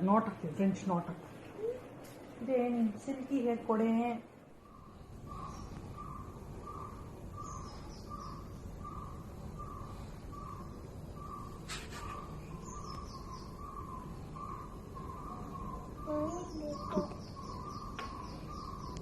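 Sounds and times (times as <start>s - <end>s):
bird calling: 4.6s - 19.0s
faint high bird chirps: 4.6s - 19.0s.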